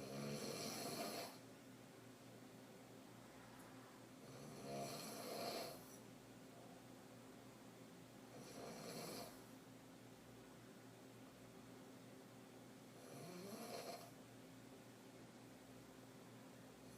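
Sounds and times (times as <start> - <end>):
woman snoring with low rattle: 0.0 - 1.4, 4.2 - 5.9, 8.3 - 9.4, 13.0 - 14.1.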